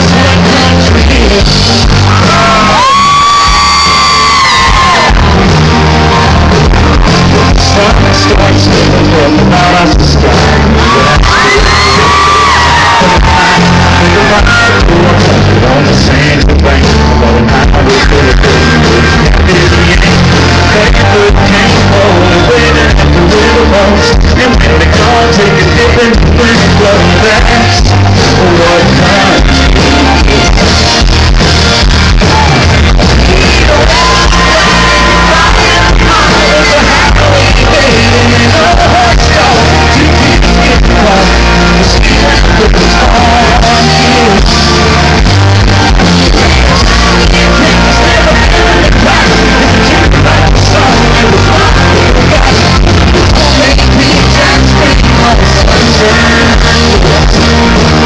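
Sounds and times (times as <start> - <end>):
crowd shouting and singing along: 0.0 - 58.0
live country-rock band with singer: 0.0 - 58.0.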